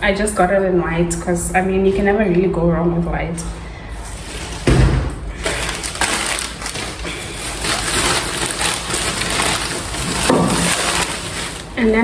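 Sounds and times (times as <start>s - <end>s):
packaging rustling and crinkling: 4.0s - 12.0s.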